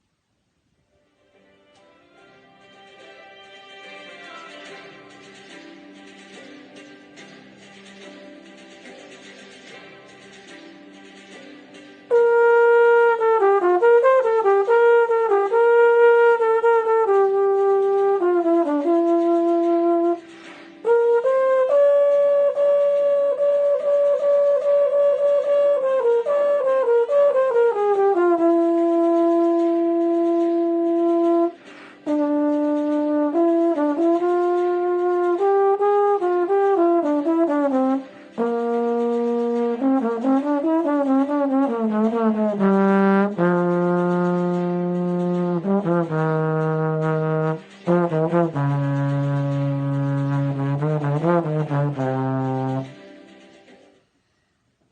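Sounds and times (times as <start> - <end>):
solo brass melody: 12.1 - 53.1.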